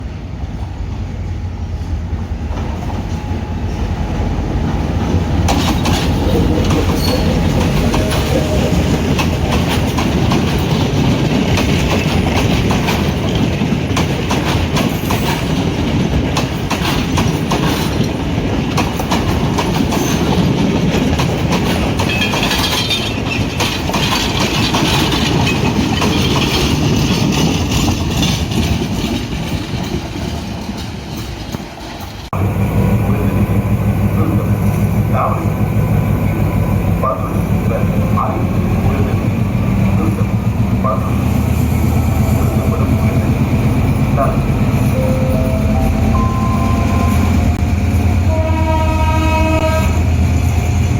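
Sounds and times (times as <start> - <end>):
diesel locomotive engine rumbling: 0.0 - 50.9
wheels clacking over rail joints: 2.5 - 48.3
wheel squeal: 6.1 - 8.7.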